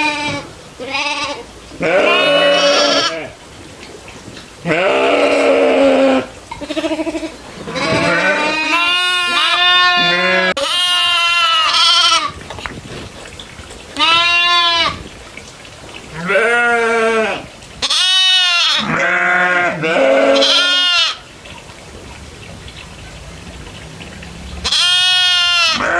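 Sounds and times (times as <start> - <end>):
goats bleating: 0.0 - 3.4, 4.6 - 12.4, 14.0 - 15.0, 16.1 - 21.2, 24.6 - 25.9.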